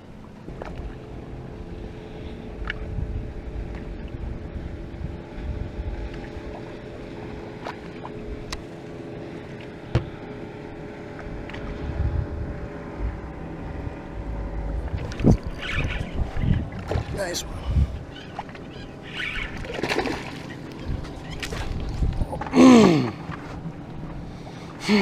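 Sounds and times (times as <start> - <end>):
steady low hum: 0.0 - 25.0
wind buffeting microphone: 2.5 - 7.2, 11.3 - 18.2, 20.7 - 22.5.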